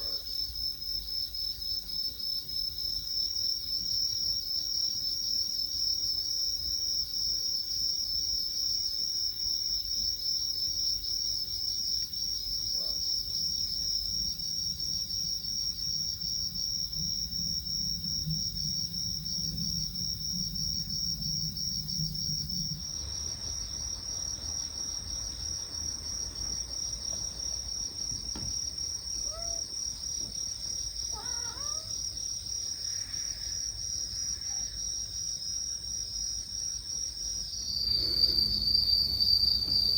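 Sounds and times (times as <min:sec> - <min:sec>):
crickets chirping: 0:00.0 - 0:39.9.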